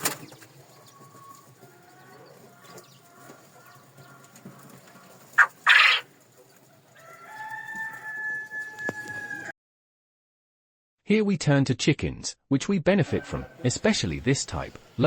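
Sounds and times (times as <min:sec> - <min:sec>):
chickens clucking softly: 0:00.0 - 0:08.0
rooster crowing: 0:06.9 - 0:09.5, 0:13.2 - 0:13.7.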